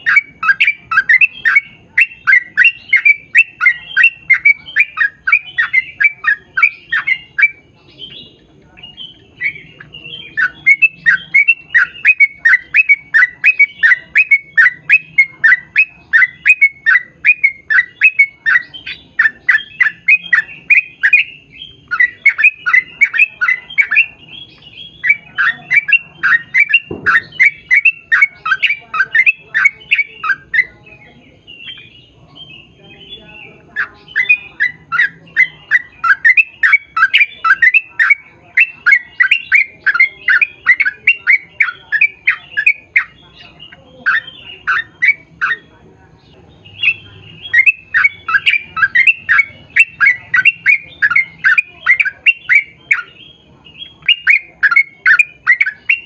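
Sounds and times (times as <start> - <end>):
bulbul singing: 0.0 - 56.0.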